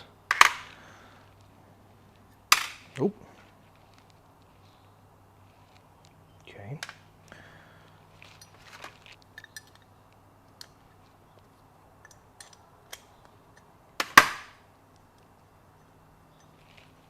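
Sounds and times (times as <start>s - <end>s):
small metal clicks and taps: 9.2s - 10.8s, 11.4s - 13.7s.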